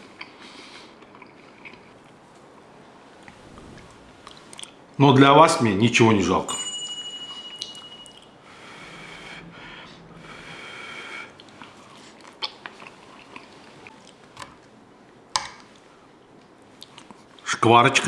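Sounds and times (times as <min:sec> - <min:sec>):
person chewing food: 0:00.0 - 0:02.4.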